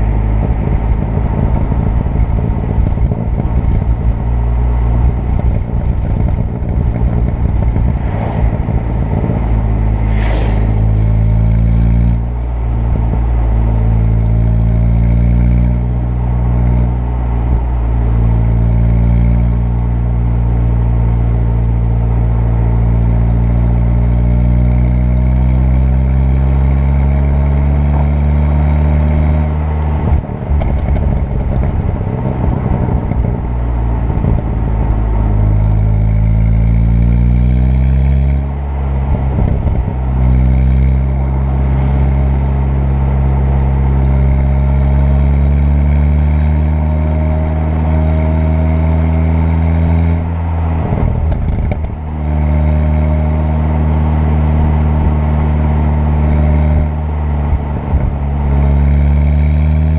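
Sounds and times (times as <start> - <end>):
exhaust pops and crackles: 0.0 - 9.8, 26.1 - 46.6, 48.4 - 53.1
turbocharged car engine accelerating: 0.0 - 59.9.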